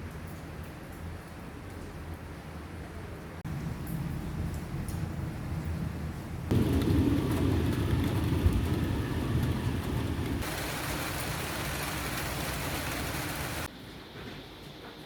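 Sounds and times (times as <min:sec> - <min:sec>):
rain hiss: 0:03.4 - 0:13.7
low rumble: 0:05.3 - 0:11.6.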